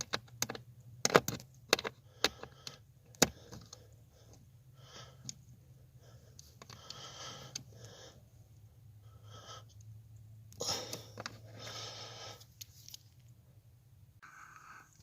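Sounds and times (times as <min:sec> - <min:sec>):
small handling clicks: 0:00.0 - 0:04.4
low steady hum: 0:00.0 - 0:15.0
person breathing heavily: 0:01.9 - 0:09.9, 0:10.6 - 0:12.6.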